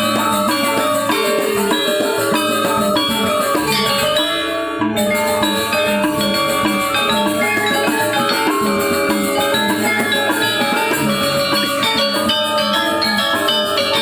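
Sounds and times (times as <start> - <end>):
drums: 0.0 - 14.0
metallophones and gongs: 0.0 - 14.0.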